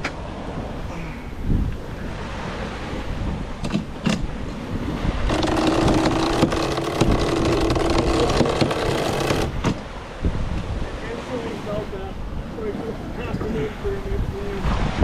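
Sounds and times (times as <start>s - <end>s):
winch ratcheting clicks: 5.3s - 9.6s.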